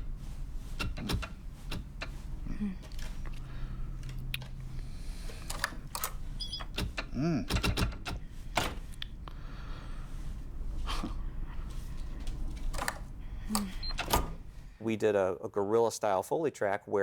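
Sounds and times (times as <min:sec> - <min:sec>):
irregular clicks and knocks: 0:00.0 - 0:09.4, 0:11.6 - 0:14.8
short squeak: 0:06.4 - 0:06.8.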